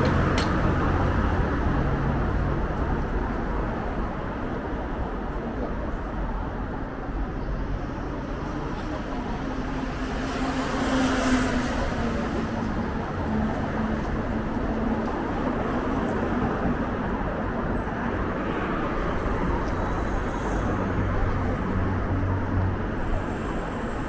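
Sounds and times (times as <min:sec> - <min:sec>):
passing vehicles and tyre noise: 0:00.0 - 0:24.0
vehicle hissing past: 0:23.0 - 0:24.0.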